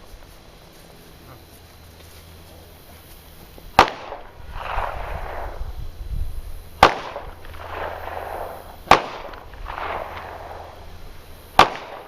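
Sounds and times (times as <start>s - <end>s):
gunshots: 3.8s - 5.6s, 6.8s - 12.0s.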